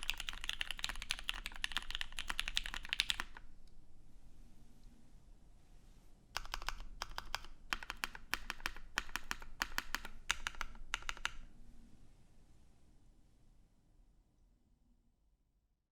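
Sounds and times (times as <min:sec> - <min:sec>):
mechanical keyboard typing: 0:00.0 - 0:03.5, 0:06.4 - 0:11.5.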